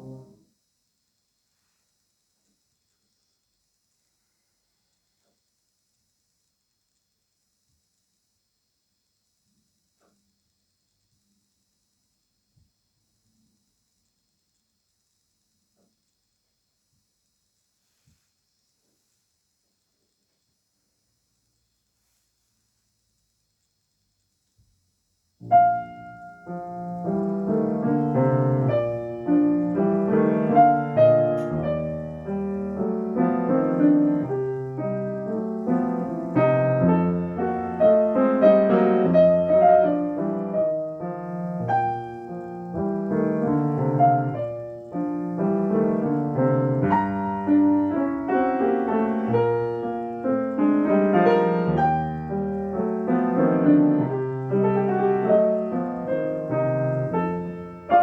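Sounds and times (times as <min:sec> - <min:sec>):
solo classical piano: 0:00.0 - 0:00.4, 0:25.4 - 0:58.0.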